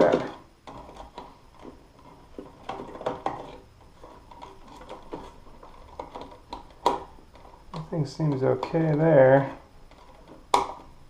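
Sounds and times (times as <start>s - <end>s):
clicks and taps of wires and tools: 2.4s - 9.2s.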